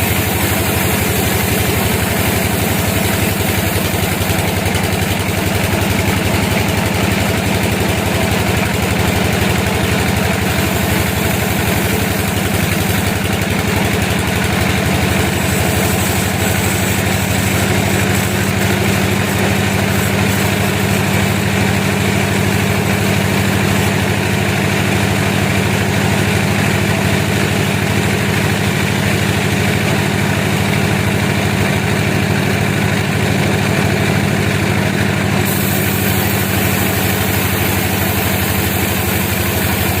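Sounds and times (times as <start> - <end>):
engine running steadily: 0.0 - 40.0.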